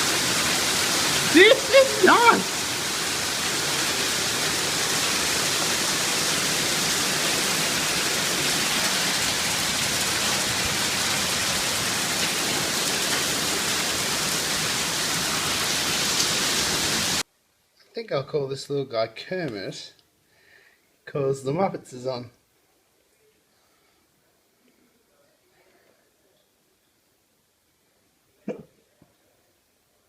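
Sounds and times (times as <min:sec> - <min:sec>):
hail and rain pelting down: 0:00.0 - 0:17.2.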